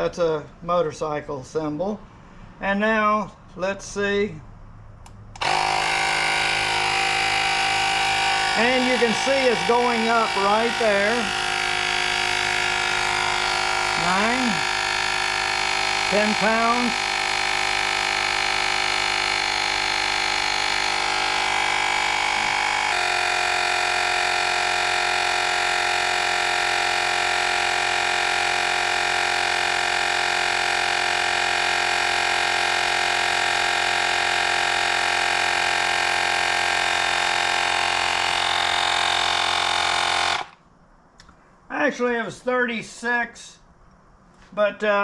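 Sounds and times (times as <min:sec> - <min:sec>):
tire inflator motor whining: 0:05.0 - 0:40.6.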